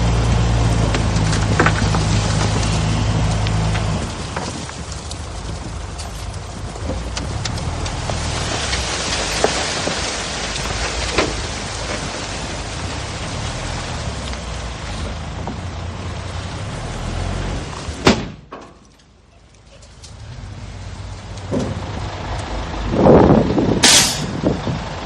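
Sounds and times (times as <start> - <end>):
diesel engine rumble: 0.0 - 25.0
sharp bang: 23.8 - 24.4.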